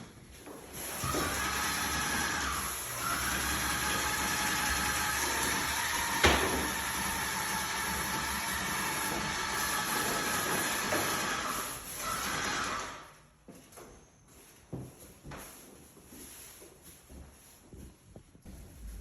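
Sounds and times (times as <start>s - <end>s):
low hum: 18.5s - 19.0s.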